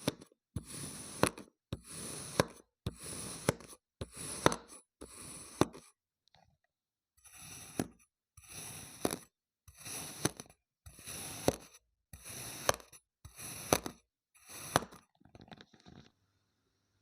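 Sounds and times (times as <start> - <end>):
knife slicing through sand: 9.8 - 15.0.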